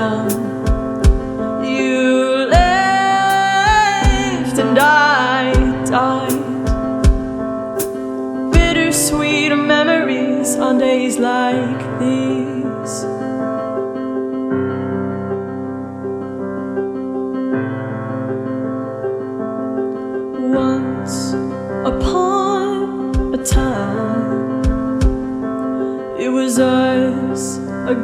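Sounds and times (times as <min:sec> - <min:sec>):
sustained keyboard chords: 0:00.0 - 0:12.6, 0:23.0 - 0:26.2
person singing: 0:00.0 - 0:13.7, 0:20.3 - 0:28.0.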